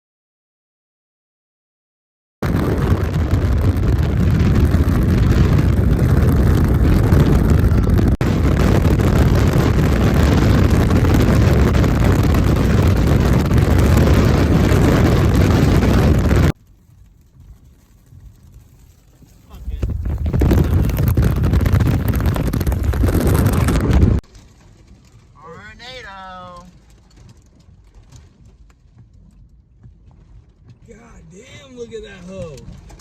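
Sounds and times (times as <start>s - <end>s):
strong wind buffeting microphone: 2.4s - 24.3s.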